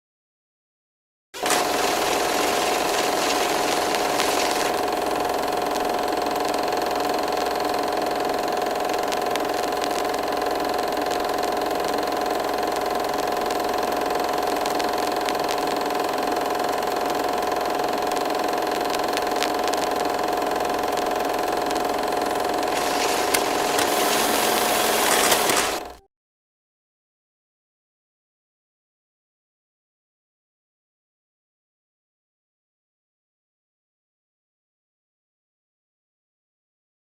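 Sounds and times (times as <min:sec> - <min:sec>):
crackling clicks: 0:01.4 - 0:26.0
film projector whirring: 0:01.4 - 0:26.0.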